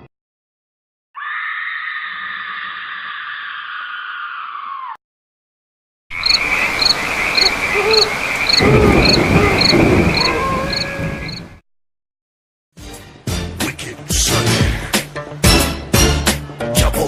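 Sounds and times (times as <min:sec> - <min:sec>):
frog calls: 0:06.1 - 0:11.6
thunder rumble: 0:06.2 - 0:11.6.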